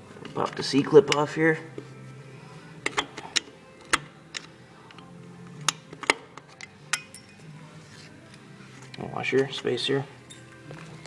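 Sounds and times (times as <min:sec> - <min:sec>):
metal tool clicks and taps: 0:02.8 - 0:07.4.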